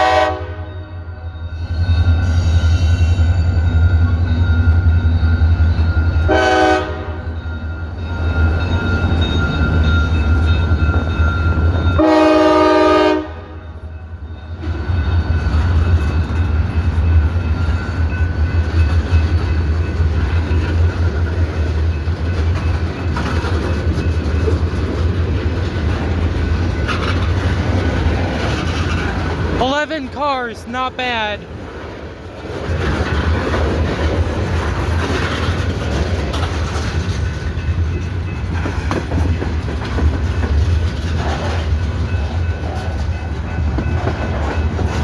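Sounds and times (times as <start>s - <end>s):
locomotive air horn blasts: 0.0s - 0.7s, 6.3s - 7.2s, 12.0s - 13.6s
train rumbling: 0.0s - 45.0s
wheels clattering on rails: 14.5s - 29.8s, 31.6s - 45.0s.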